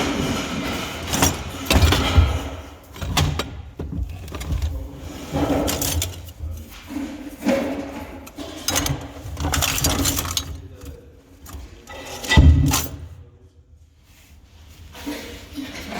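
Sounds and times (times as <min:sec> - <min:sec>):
metal objects clinking: 0:08.2 - 0:13.1.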